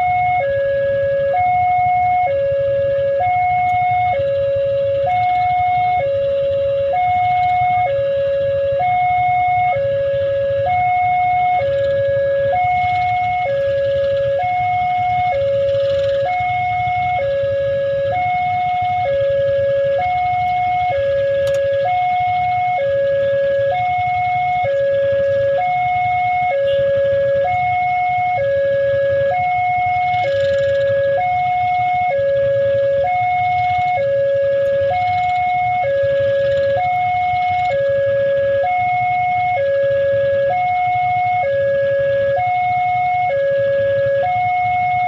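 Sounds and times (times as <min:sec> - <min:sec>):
level crossing warning siren: 0:00.0 - 0:45.0
low background rumble: 0:00.0 - 0:45.0.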